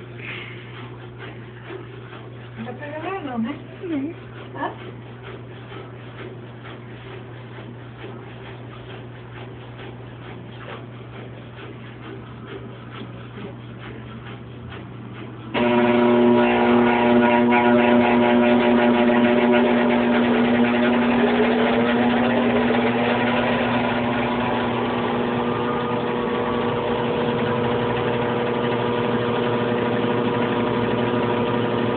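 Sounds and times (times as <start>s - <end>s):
old machine motor rumbling: 0.0s - 31.9s.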